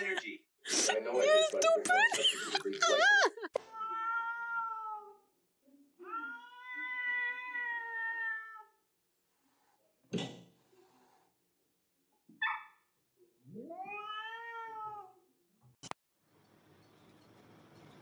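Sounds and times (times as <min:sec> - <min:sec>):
cat meowing: 0:03.7 - 0:05.2, 0:06.0 - 0:08.8, 0:13.6 - 0:15.2.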